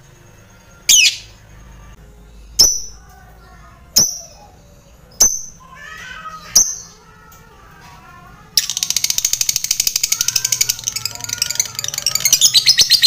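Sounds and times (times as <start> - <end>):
soft bird twittering: 0.8 - 1.4
lovebird chattering trill: 0.9 - 1.3, 8.6 - 13.0
lovebird shrill calls: 0.9 - 1.3.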